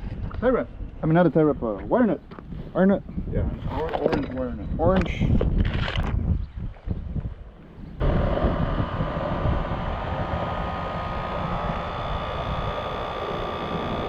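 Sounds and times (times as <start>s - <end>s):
air conditioner unit running: 8.0s - 14.0s
fan whoosh: 8.0s - 14.0s
steady whine: 8.0s - 14.0s.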